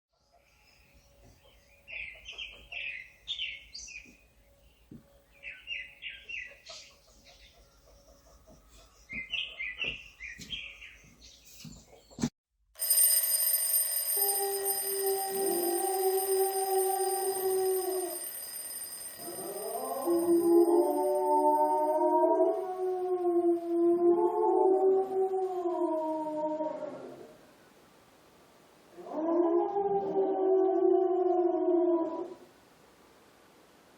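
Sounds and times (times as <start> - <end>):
alarm ringing: 12.8 - 22.8
low wavering tone: 13.0 - 23.4.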